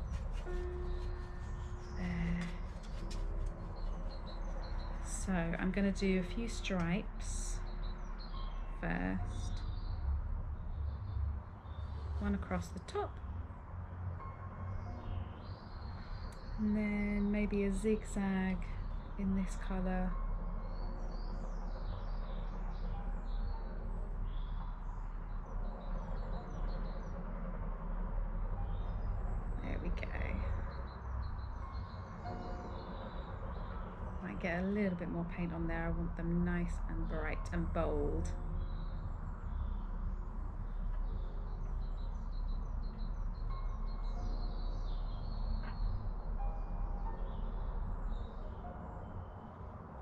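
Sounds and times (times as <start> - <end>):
small birds chirping: 0.0 - 13.2, 14.7 - 49.9
low background rumble: 0.0 - 50.0.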